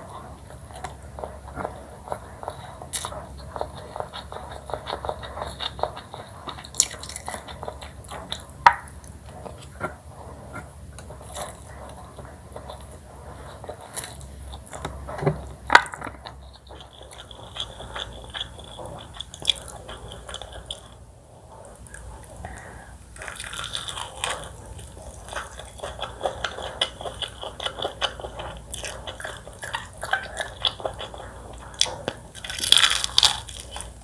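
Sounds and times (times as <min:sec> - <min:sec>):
chewing: 0:00.0 - 0:34.0
crunchy bites: 0:32.3 - 0:34.0.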